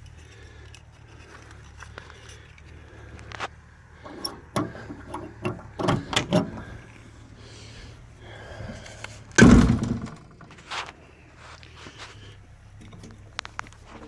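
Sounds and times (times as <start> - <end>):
knocks and clatter at door: 4.1 - 6.7, 9.4 - 10.5
heavy thump: 9.4 - 10.6.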